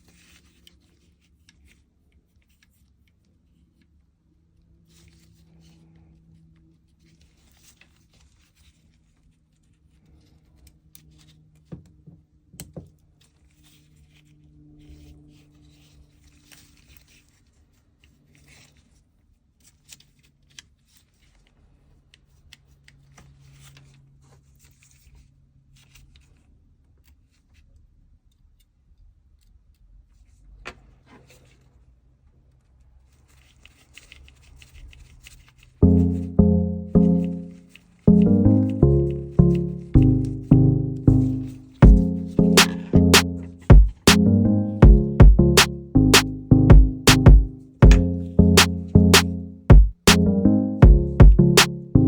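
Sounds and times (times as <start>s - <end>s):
sharp clicks: 47.0s - 49.3s.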